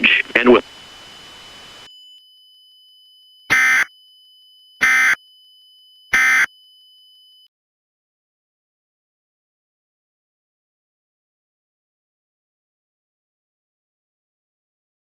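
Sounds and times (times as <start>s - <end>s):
digital data bursts: 3.5s - 3.9s, 4.8s - 5.2s, 6.1s - 6.5s.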